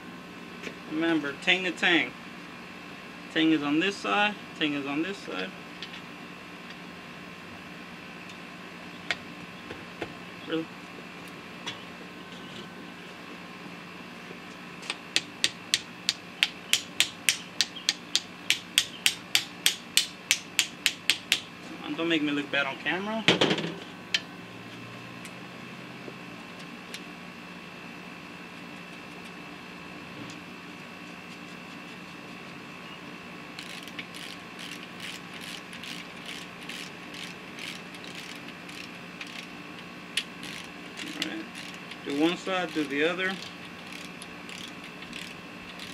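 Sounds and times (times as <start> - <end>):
ratchet wrench clicking: 33.6 - 39.5, 40.4 - 45.9.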